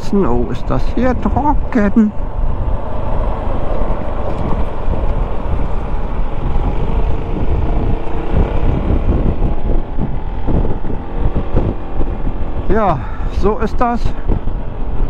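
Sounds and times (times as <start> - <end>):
wind buffeting microphone: 0.0 - 15.0
scooter engine running: 2.2 - 13.0.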